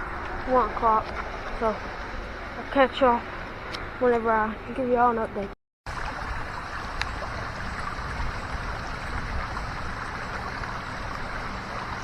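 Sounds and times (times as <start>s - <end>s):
creek rushing: 5.9s - 12.0s.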